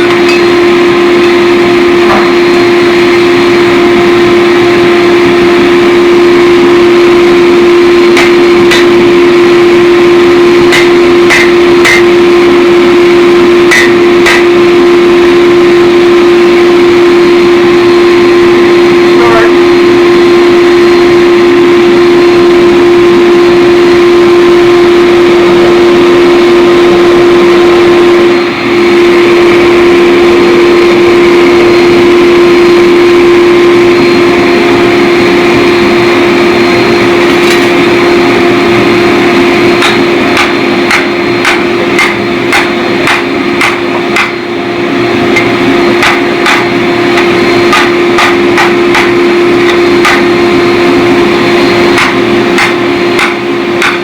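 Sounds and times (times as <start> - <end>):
hammer striking hot steel: 0.0 - 3.4, 6.8 - 15.8, 39.3 - 54.0
loud steady hum: 0.0 - 54.0.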